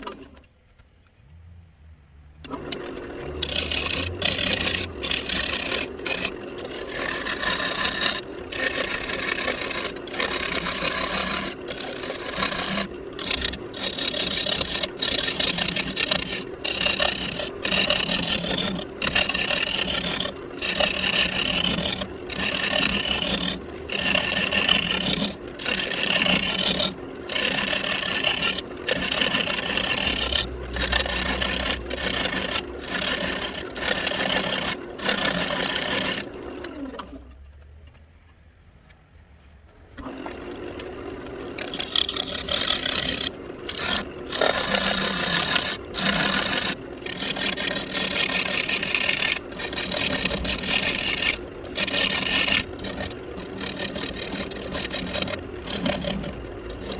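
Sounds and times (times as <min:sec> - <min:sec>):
lathe motor humming: 0:02.4 - 0:37.3, 0:39.7 - 0:56.9
turning tool scraping wood: 0:02.4 - 0:56.9.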